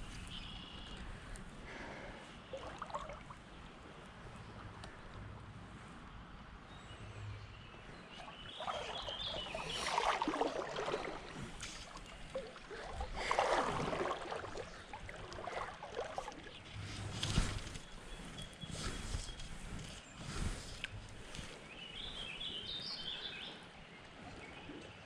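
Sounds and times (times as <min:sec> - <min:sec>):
river water sloshing and splashing: 0:02.4 - 0:04.8, 0:08.0 - 0:21.6.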